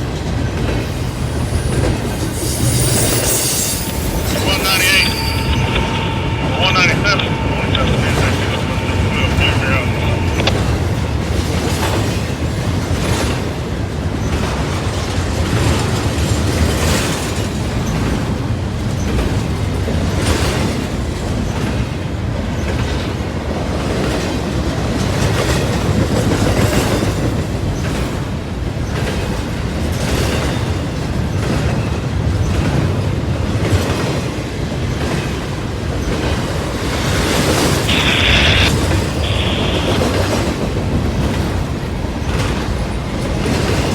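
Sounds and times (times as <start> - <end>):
train cars rumbling: 0.0 - 15.4
wheel squeal: 1.0 - 6.2.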